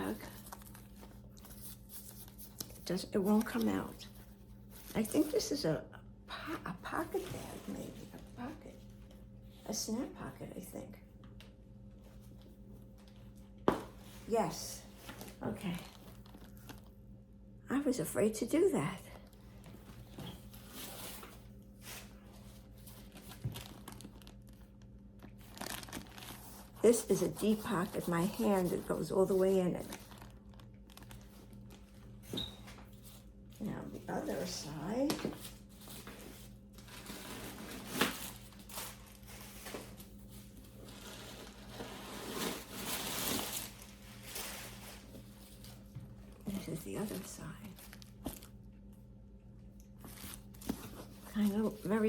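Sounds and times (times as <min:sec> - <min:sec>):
packaging rustling and crinkling: 0:14.9 - 0:17.0, 0:19.9 - 0:33.3, 0:35.2 - 0:45.9.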